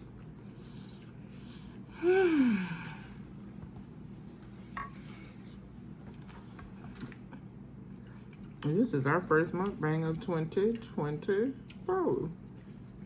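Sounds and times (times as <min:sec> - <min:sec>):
person sighing while eating: 0:01.9 - 0:03.3.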